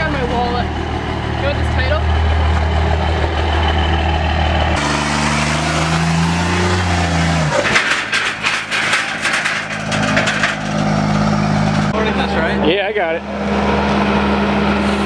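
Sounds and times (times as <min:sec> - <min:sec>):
vehicle engine idling: 0:00.0 - 0:07.5
rapid crackling clatter: 0:07.4 - 0:11.2.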